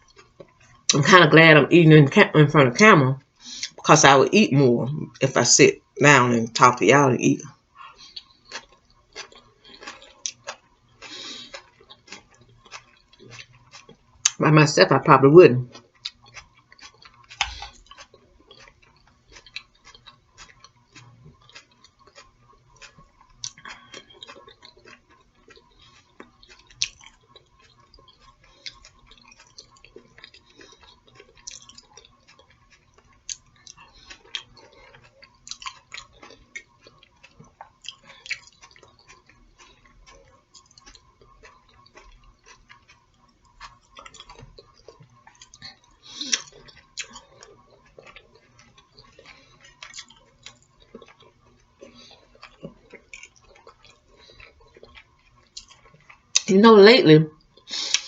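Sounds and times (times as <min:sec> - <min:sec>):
person chewing food: 0:00.0 - 0:01.0, 0:02.7 - 0:03.9, 0:05.8 - 0:14.4, 0:15.6 - 0:56.5, 0:57.3 - 0:58.0.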